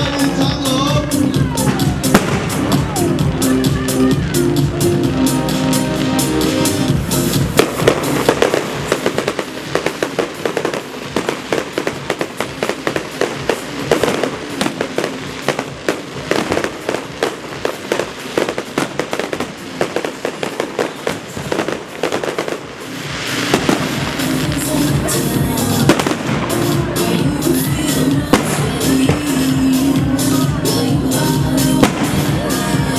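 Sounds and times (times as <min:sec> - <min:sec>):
fireworks bangs and crackles: 0:00.0 - 0:32.9
music: 0:00.0 - 0:32.9.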